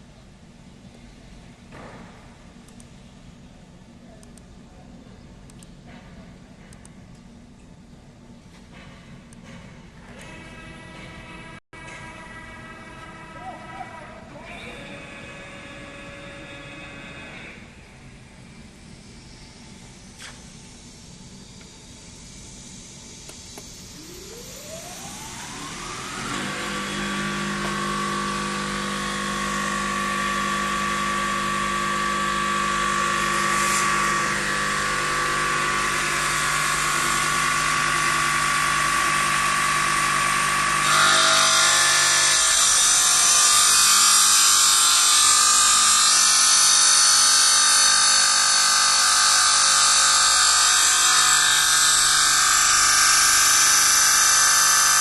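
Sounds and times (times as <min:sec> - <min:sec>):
saw blade motor whine: 0:21.3 - 0:55.0
saw blade grinding stone: 0:26.0 - 0:55.0.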